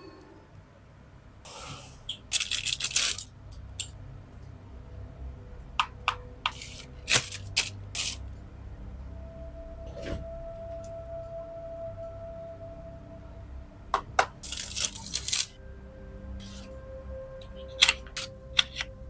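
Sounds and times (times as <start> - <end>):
packaging crackling or tearing: 2.3 - 3.3, 7.1 - 8.2, 14.4 - 15.5
packaging rustling: 14.4 - 15.5.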